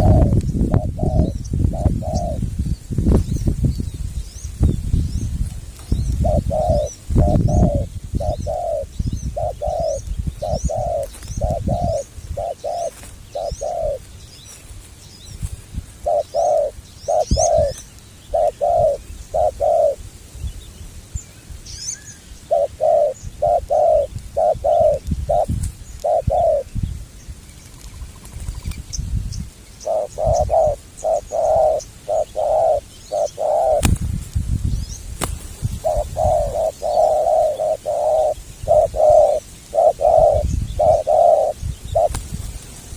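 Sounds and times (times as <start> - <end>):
doves cooing: 0.0 - 2.5, 6.1 - 14.1, 15.8 - 20.0, 22.4 - 26.7, 29.8 - 33.9, 35.8 - 42.2
small birds chirping: 0.0 - 42.9.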